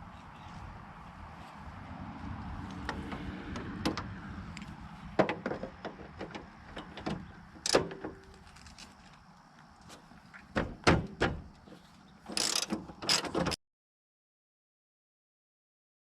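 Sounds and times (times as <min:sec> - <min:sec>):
sharp metal clicks and knocks: 0:05.2 - 0:08.8, 0:12.3 - 0:13.6
ratchet wrench ratcheting: 0:12.3 - 0:13.4.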